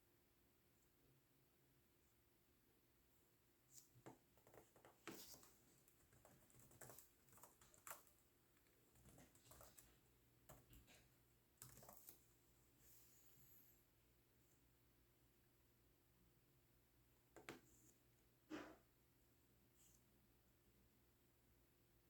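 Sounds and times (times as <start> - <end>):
faint laptop keyboard typing: 3.6 - 13.0, 17.3 - 18.2.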